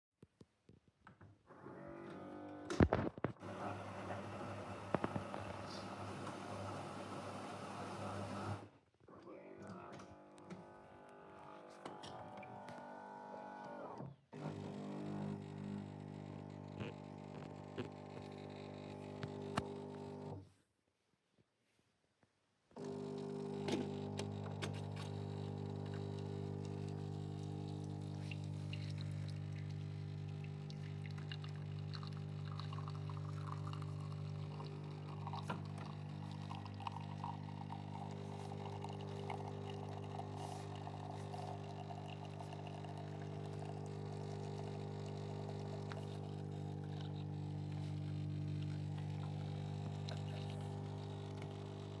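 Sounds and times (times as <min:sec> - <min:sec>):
coffee machine pump humming: 0:03.4 - 0:08.7, 0:10.4 - 0:20.4, 0:22.8 - 0:52.0
liquid pouring: 0:26.7 - 0:47.6.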